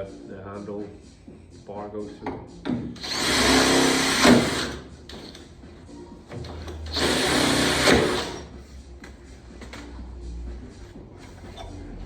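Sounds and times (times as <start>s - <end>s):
electric drill boring metal: 3.0s - 5.4s, 6.9s - 8.5s.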